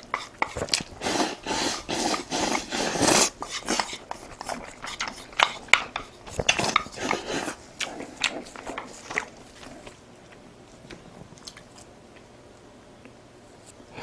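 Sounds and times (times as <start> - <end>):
person chewing crunchy food: 0.0 - 12.2.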